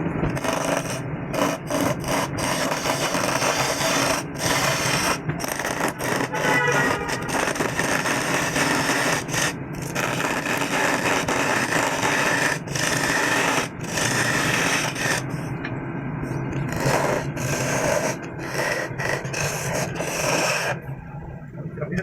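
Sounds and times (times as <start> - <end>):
power tool grinding wood: 0.4 - 15.4, 16.6 - 20.8.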